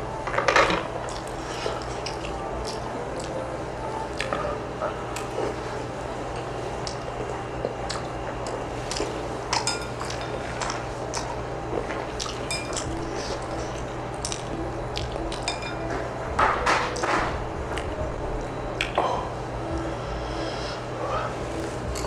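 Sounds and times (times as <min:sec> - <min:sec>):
low hum: 0:00.0 - 0:22.0
eating sounds: 0:01.0 - 0:15.7
cutlery clinking against dishes: 0:08.9 - 0:11.3, 0:12.2 - 0:13.0, 0:15.3 - 0:17.3.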